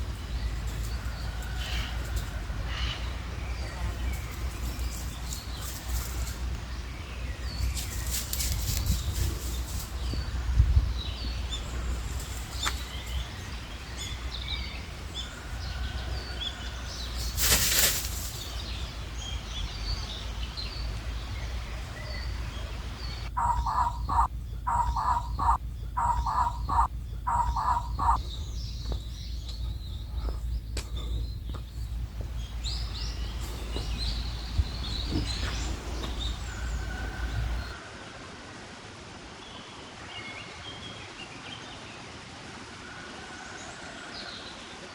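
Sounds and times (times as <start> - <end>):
small birds chirping: 0.0 - 37.8
low rumble of wind: 0.0 - 44.9
short pitched bird calls: 22.0 - 30.2.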